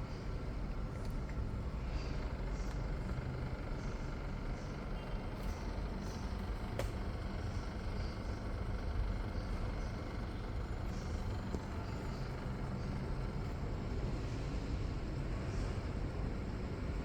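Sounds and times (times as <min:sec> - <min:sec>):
air conditioner running: 0:00.0 - 0:17.0.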